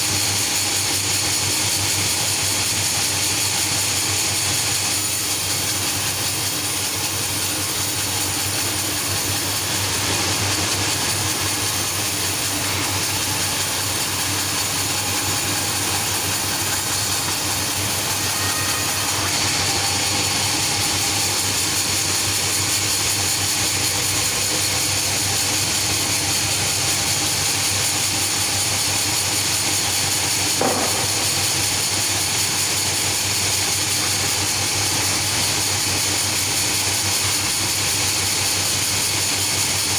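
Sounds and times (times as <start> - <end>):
sawmill machinery running: 0.0 - 39.9
short knock: 30.6 - 31.4.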